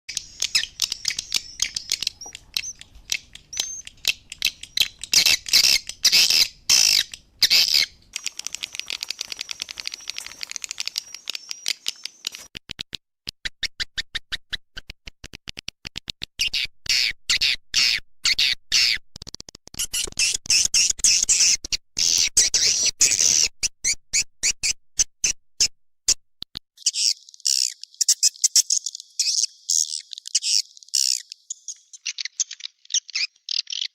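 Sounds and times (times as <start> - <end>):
fast evenly spaced clicks: 0.1 - 6.1, 8.1 - 12.4
swiftlets chirping and twittering: 0.1 - 12.4.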